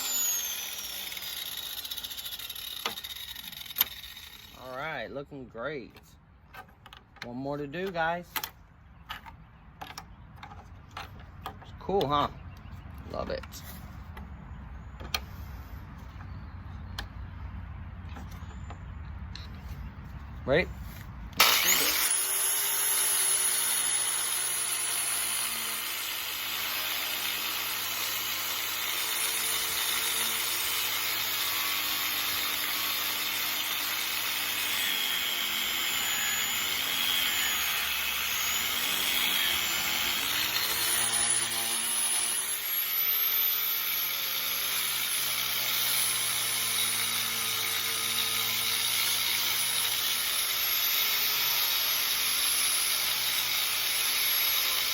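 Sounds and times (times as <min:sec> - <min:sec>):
angle grinder grinding metal: 0:00.0 - 0:04.7, 0:21.4 - 0:54.9.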